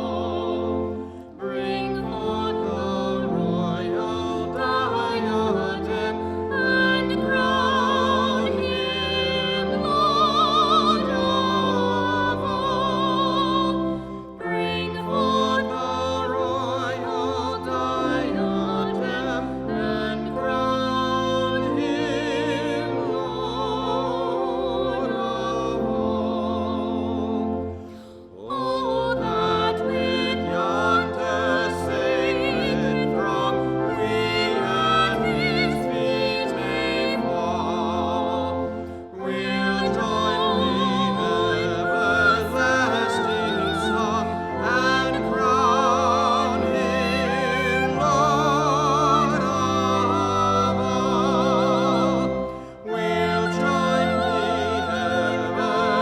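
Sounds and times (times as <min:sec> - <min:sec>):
classical singing with vibrato: 0:00.0 - 0:56.0
instrumental accompaniment: 0:00.0 - 0:56.0.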